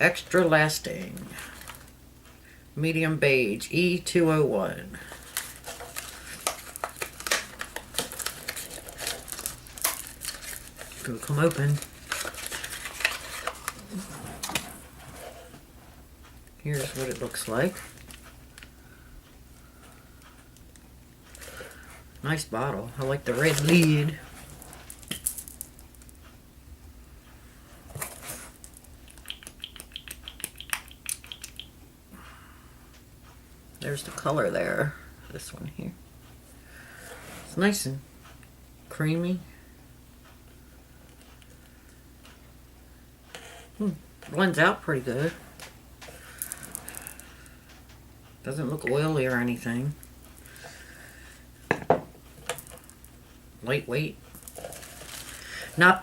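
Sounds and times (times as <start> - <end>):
packaging crinkling: 5.2 - 14.8, 54.3 - 55.7.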